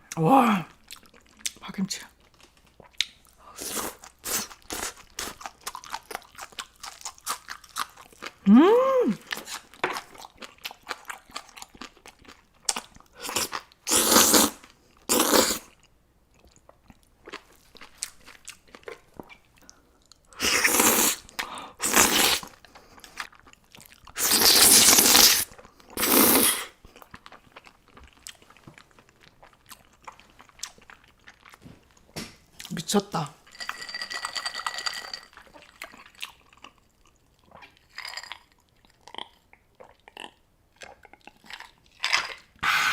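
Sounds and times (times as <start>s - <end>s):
wet chewing: 2.2s - 8.5s, 9.2s - 32.8s, 35.4s - 42.5s.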